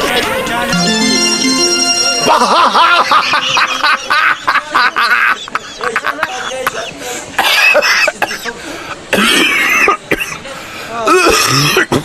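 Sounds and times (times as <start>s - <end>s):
person coughing: 9.2s - 10.3s, 11.1s - 12.0s.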